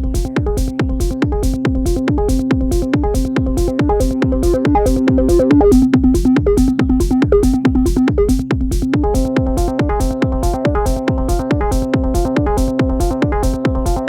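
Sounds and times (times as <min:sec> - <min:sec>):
electronic dance music: 0:00.0 - 0:14.0
kick drum and hi-hats: 0:00.0 - 0:14.0
repeating synth sequence: 0:01.4 - 0:11.9.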